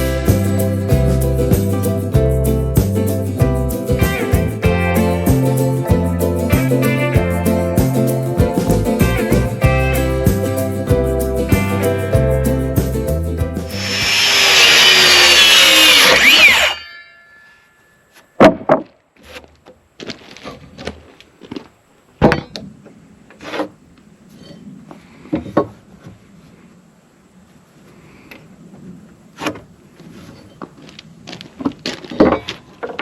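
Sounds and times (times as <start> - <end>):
background music: 0.0 - 16.3
power tool whining under load: 13.7 - 16.8
sharp knocks and clunks: 22.2 - 22.7.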